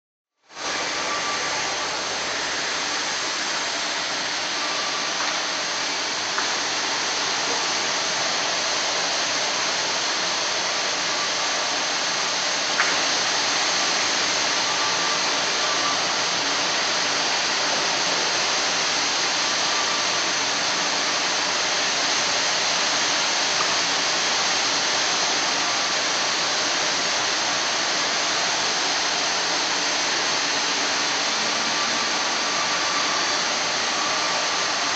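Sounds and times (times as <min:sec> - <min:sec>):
band saw running: 0:00.6 - 0:34.9.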